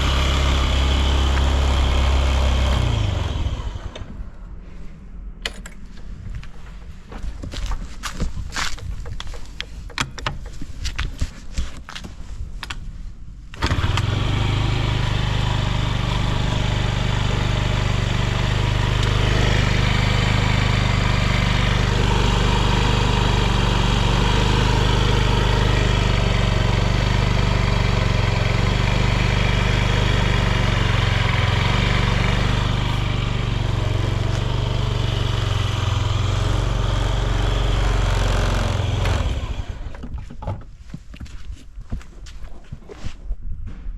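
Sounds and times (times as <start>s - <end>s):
scooter engine cranking and idling: 0.0s - 4.5s, 13.5s - 41.3s.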